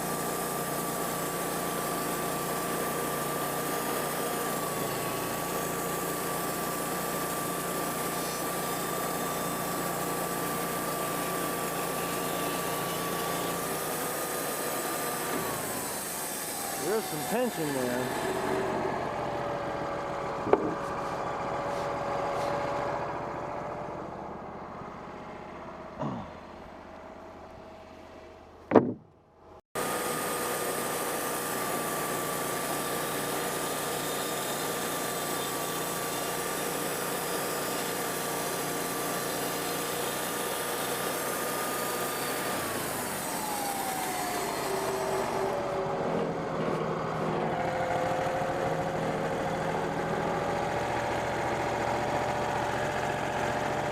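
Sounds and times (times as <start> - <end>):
sawmill engine running: 0.0 - 29.0, 29.8 - 53.9
brief knocks: 20.4 - 20.9, 28.7 - 29.2.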